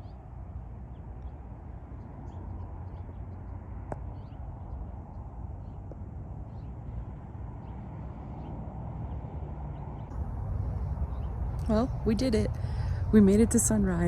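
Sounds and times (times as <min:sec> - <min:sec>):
low steady rumble: 0:10.0 - 0:14.0.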